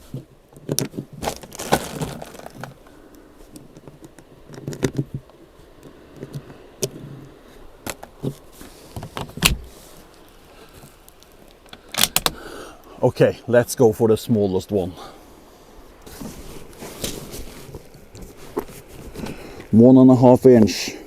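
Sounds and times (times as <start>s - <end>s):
equipment clicking and rattling: 11.2s - 12.4s.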